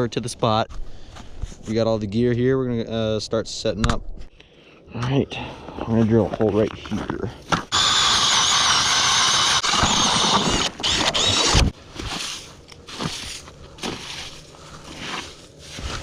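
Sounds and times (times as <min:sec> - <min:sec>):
ice auger drilling whine: 0:07.7 - 0:11.7.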